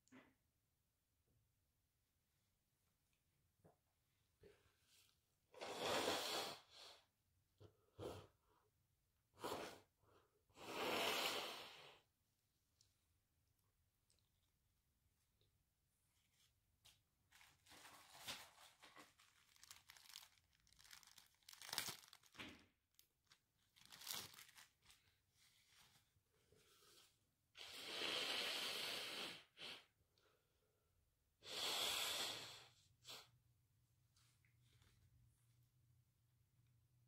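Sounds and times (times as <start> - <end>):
person blowing nose: 5.6 - 7.1, 10.5 - 12.0, 27.6 - 29.9, 31.4 - 33.3
paper tissue rustling: 17.2 - 26.0.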